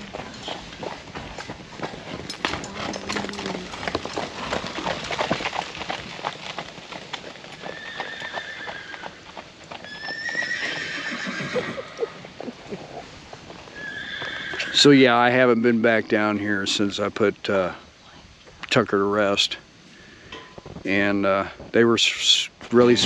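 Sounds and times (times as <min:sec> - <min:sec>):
horse hoofbeats: 0:00.0 - 0:14.9, 0:22.7 - 0:23.0
horse whinnying: 0:07.6 - 0:09.2, 0:09.8 - 0:12.3, 0:13.7 - 0:14.8.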